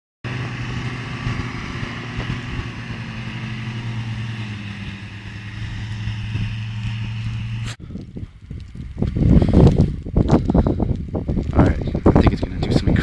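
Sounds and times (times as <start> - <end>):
car engine running: 0.3 - 7.8.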